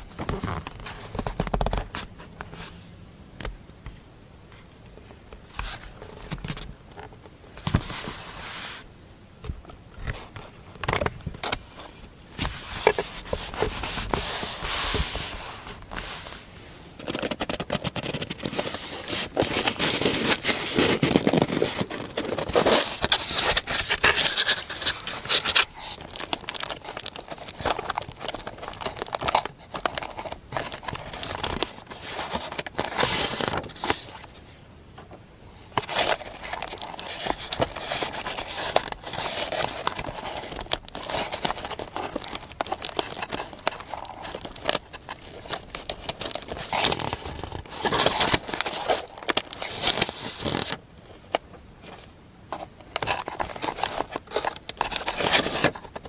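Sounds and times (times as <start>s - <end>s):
paper rustling and crinkling: 0.0s - 2.8s, 10.0s - 56.0s.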